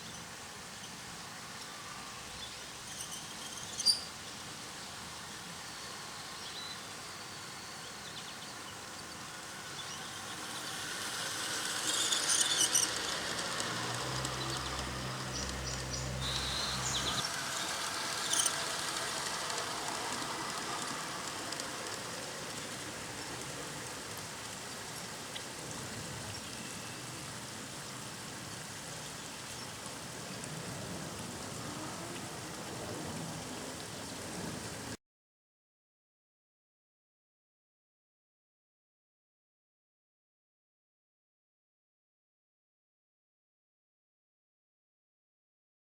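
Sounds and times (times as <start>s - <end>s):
model train rolling on track: 0.0s - 35.0s
train wheel clicks: 8.8s - 25.5s.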